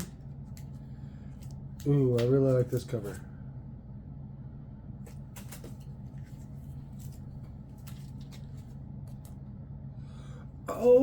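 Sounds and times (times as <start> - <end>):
steady low hum: 0.0 - 11.0
comic book pages rustling: 5.0 - 9.4.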